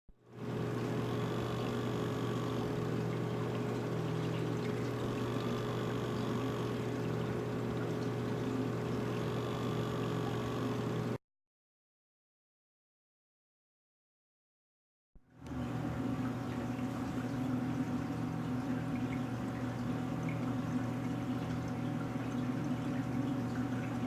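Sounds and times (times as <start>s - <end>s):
aquarium pump motor hum: 0.2s - 11.2s, 15.2s - 24.0s
faint rising and falling whine: 0.4s - 11.2s.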